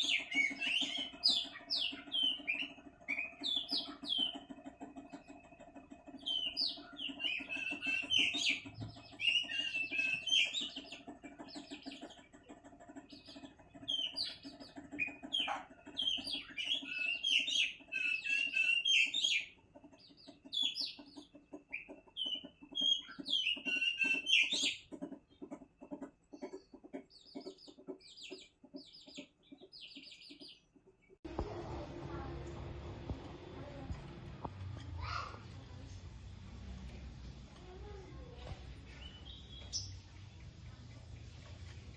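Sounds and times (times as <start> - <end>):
bird chirping and chattering: 0.0 - 31.4, 37.6 - 41.9
steady low hum: 31.3 - 41.9.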